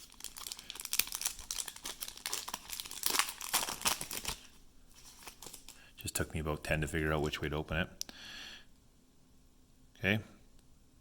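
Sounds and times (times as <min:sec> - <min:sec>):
plastic wrapper crinkling and tearing: 0:00.0 - 0:05.8.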